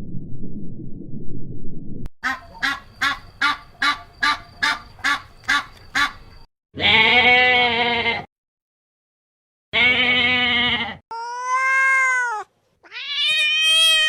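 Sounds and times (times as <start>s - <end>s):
low rumble: 0.0s - 2.1s
duck quacking: 2.2s - 6.2s.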